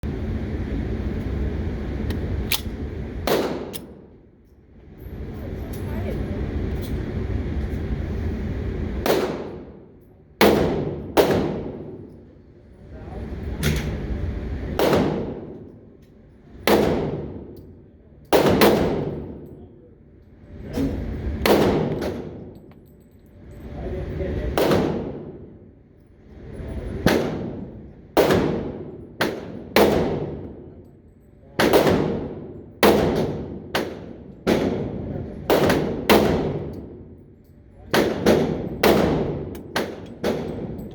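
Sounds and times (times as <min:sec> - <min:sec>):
pistol shots: 0:02.5 - 0:04.0, 0:09.0 - 0:09.8, 0:10.4 - 0:12.0, 0:14.8 - 0:15.6, 0:16.7 - 0:17.6, 0:18.3 - 0:19.4, 0:21.4 - 0:22.4, 0:24.6 - 0:25.4, 0:27.1 - 0:30.6, 0:31.6 - 0:37.0, 0:37.9 - 0:40.8.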